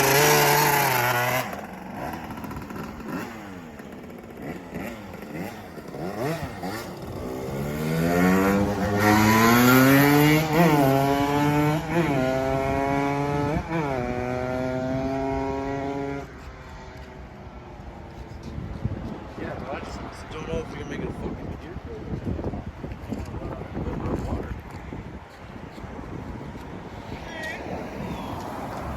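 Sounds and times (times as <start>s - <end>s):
two-stroke engine revving: 0.0s - 16.5s.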